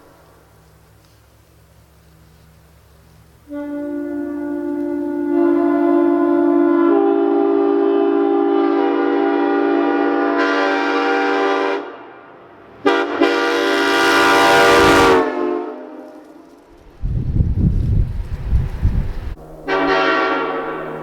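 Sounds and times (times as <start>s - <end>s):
multi-note air horn: 3.4s - 16.6s, 19.4s - 21.0s.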